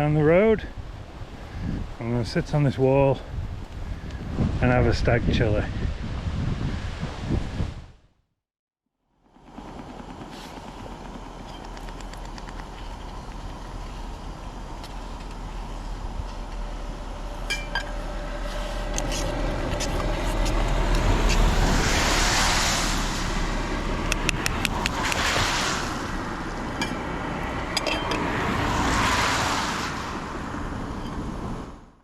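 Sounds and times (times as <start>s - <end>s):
vehicles passing on road: 9.2s - 32.0s
steady low rumble: 9.9s - 28.6s.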